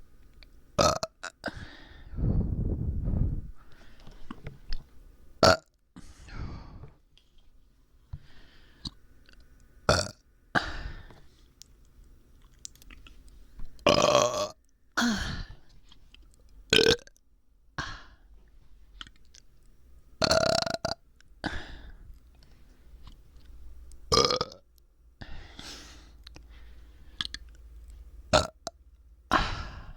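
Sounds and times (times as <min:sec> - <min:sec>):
person burping: 0:00.8 - 0:01.6, 0:13.9 - 0:15.4, 0:16.8 - 0:17.1, 0:20.2 - 0:20.9, 0:24.1 - 0:24.6, 0:28.4 - 0:28.7.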